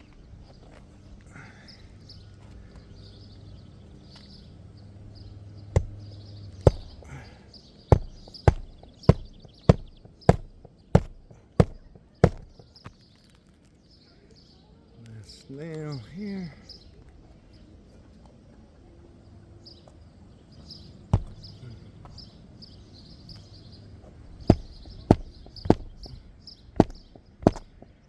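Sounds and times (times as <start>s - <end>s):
hammer striking nail: 5.8s - 7.2s, 7.9s - 12.7s, 21.2s - 21.5s, 24.5s - 26.2s, 26.8s - 27.8s.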